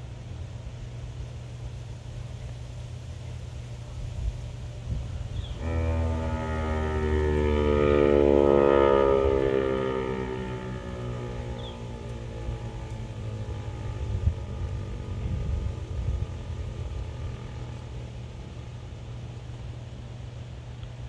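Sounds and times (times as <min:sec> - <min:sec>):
low rumble: 0:02.1 - 0:21.0
siren winding down: 0:05.6 - 0:18.0.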